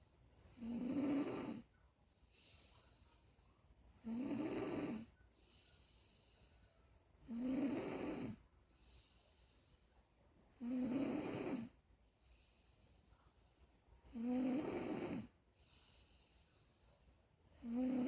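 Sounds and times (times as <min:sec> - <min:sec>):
faint breathing: 0:00.0 - 0:18.0
low rasping snores: 0:00.5 - 0:01.7, 0:04.0 - 0:05.1, 0:07.2 - 0:08.4, 0:10.6 - 0:11.8, 0:14.1 - 0:15.3, 0:17.6 - 0:18.0.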